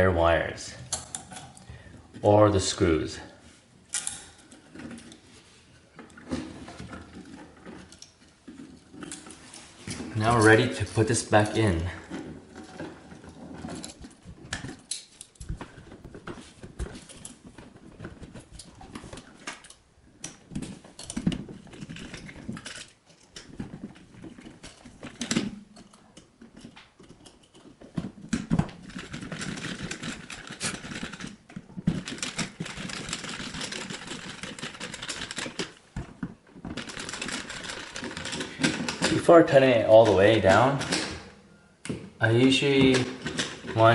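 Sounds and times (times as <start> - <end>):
outlet handling clicks and knocks: 12.1 - 39.3.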